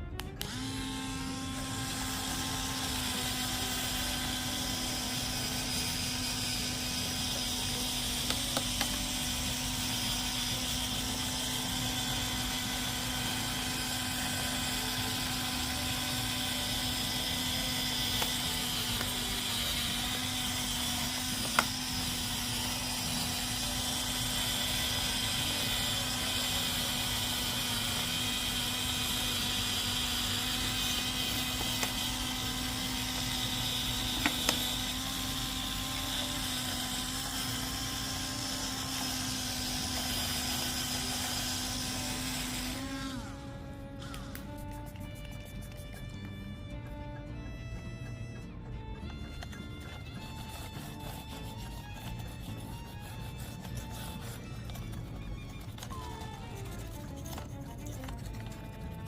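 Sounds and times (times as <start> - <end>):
small electric motor humming: 0.0 - 59.0.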